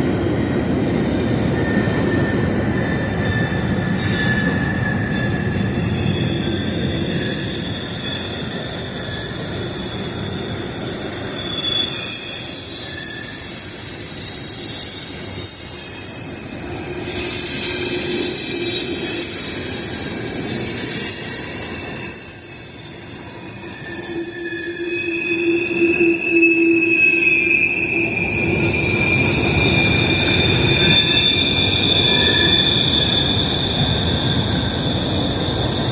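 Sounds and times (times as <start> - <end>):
rumble of rolling train cars: 0.0 - 35.9
train wheels squealing: 0.0 - 35.9.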